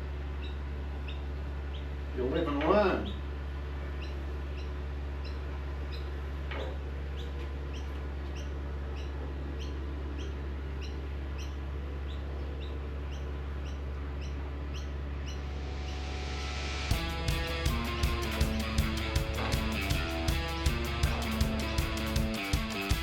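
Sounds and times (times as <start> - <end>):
steady low hum: 0.0 - 23.0
small bird chirping: 0.3 - 2.0, 3.0 - 16.4.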